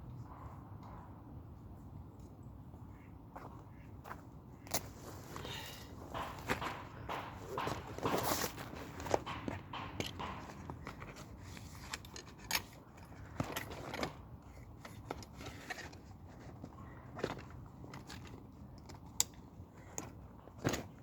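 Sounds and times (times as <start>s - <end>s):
fishing gear clicking and rustling: 4.7s - 21.0s.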